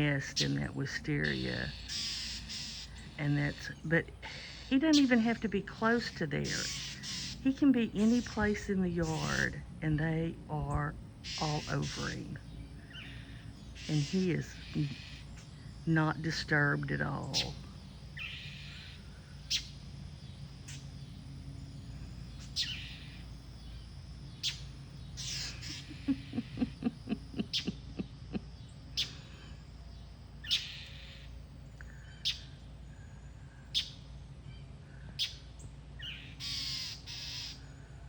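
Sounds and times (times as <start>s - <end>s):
birds giving harsh alarm calls: 0.0s - 32.9s, 33.7s - 34.2s, 35.2s - 37.9s.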